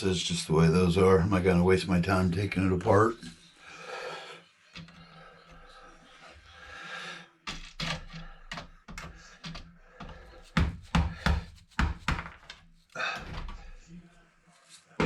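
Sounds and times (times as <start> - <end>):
electronic parts clicking and knocking: 7.4 - 12.8.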